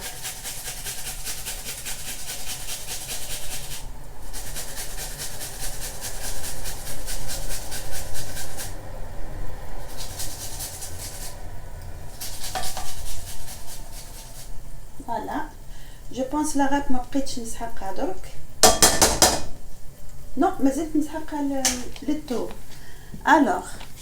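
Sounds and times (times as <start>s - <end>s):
onion grated on hand grater: 0.0s - 8.9s, 9.7s - 15.0s.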